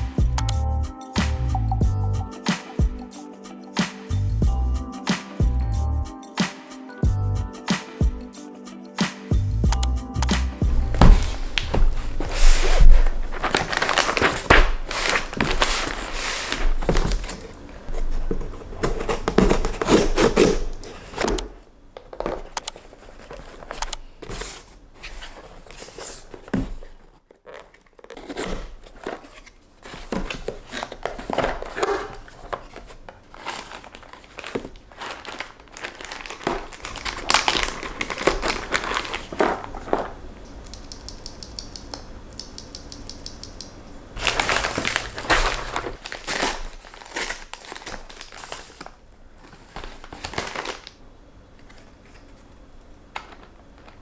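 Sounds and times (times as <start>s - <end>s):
packaging crinkling and rustling: 10.7s - 40.7s, 44.2s - 54.0s.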